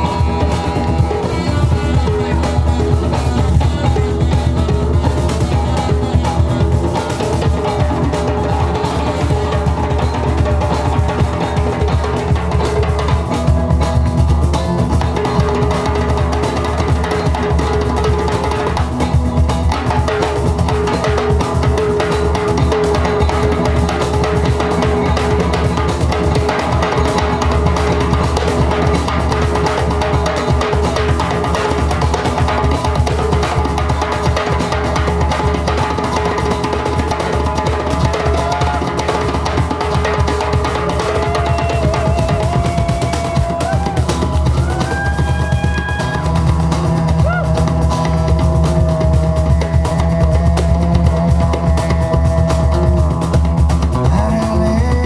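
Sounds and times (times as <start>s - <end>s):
drum kit beat: 0.0s - 55.0s
live band playing: 0.0s - 55.0s.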